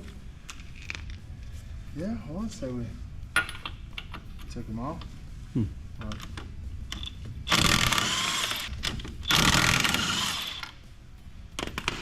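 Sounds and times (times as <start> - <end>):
power wrench whining: 6.9 - 10.8.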